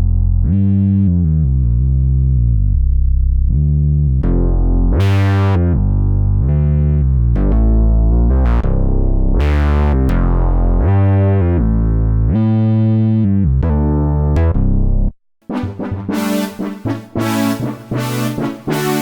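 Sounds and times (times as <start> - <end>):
deep synth bass: 0.0 - 19.0
synthesizer sustained notes: 15.5 - 19.0.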